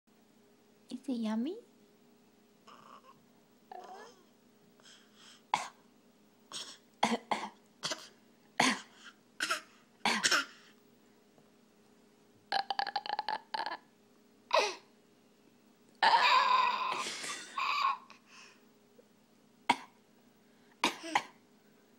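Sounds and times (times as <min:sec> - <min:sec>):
baby copying coughs: 0:05.5 - 0:05.8, 0:06.5 - 0:10.6, 0:19.7 - 0:20.0, 0:20.8 - 0:21.4
adult fake coughing: 0:06.5 - 0:10.6, 0:20.8 - 0:21.4
silly throat noise: 0:12.5 - 0:13.9.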